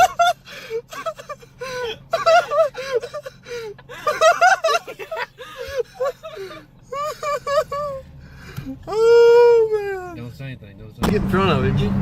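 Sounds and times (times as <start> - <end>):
high-pitched breathless laughter: 0.0 - 8.8.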